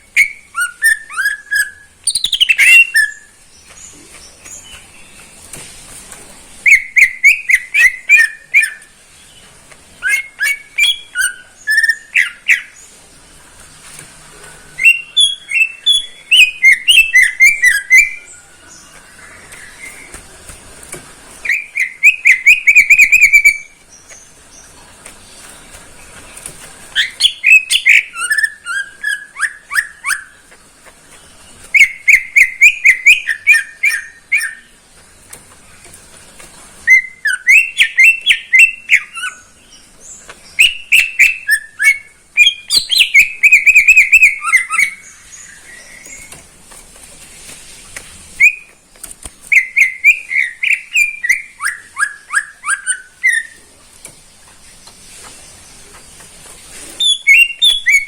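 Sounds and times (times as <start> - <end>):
bird singing: 0.0 - 5.4, 6.6 - 12.9, 14.7 - 20.3, 21.4 - 34.8, 36.8 - 46.5, 49.4 - 53.7, 57.0 - 58.0.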